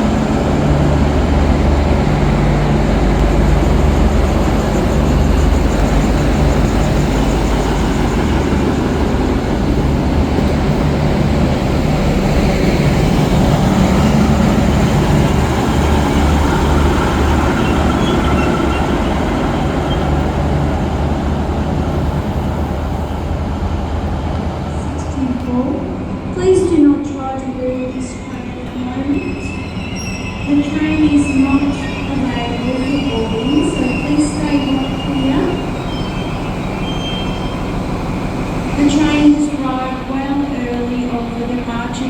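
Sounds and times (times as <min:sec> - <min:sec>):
diesel train engine drone: 0:00.0 - 0:42.0
rail and wheel noise: 0:00.0 - 0:42.0.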